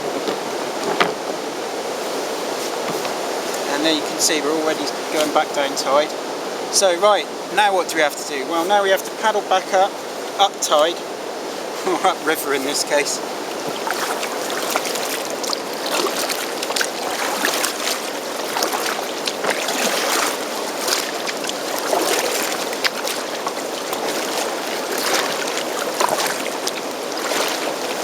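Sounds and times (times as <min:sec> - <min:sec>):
steady water wash: 0:00.0 - 0:28.0
paddle splashing in water: 0:00.1 - 0:06.6, 0:08.5 - 0:28.0
water dripping: 0:13.4 - 0:28.0.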